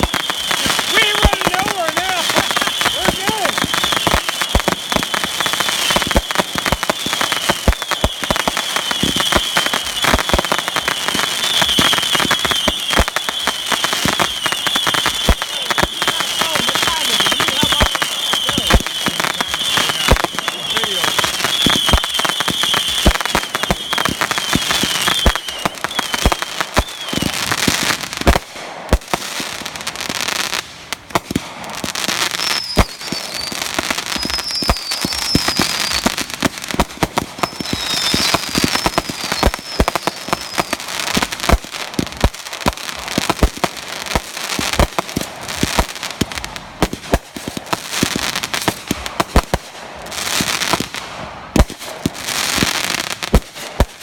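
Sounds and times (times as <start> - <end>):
high warbling firework whistles: 0.0 - 27.5, 32.3 - 36.2, 37.4 - 40.8
fireworks bangs and crackling: 0.0 - 54.0.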